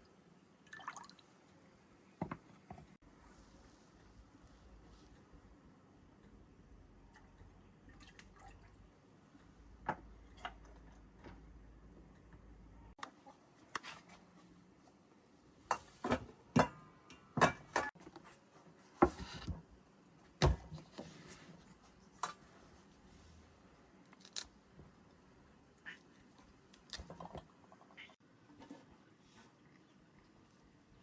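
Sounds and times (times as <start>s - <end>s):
kitchen utensils clattering: 15.7s - 18.0s.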